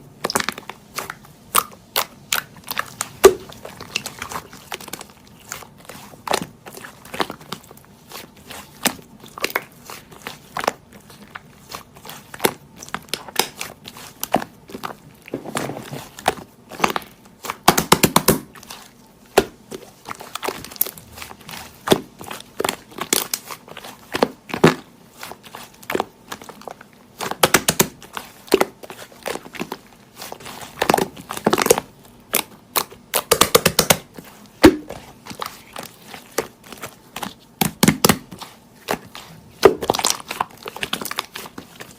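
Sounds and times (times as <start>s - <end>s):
slime clicking and popping: 30.8s - 36.5s.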